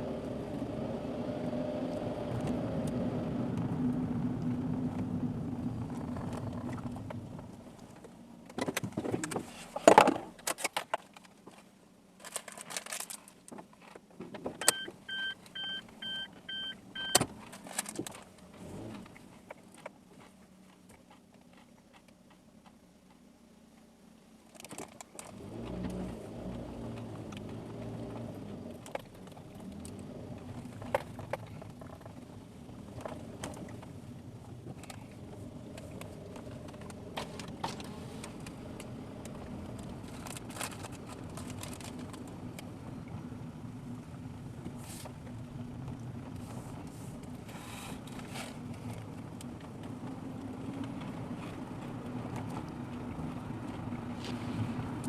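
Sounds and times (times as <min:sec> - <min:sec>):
car engine: 0:00.0 - 0:55.0
road noise: 0:00.0 - 0:55.0
clicks and knocks from tyres: 0:05.8 - 0:14.7, 0:17.2 - 0:23.3, 0:24.4 - 0:42.8.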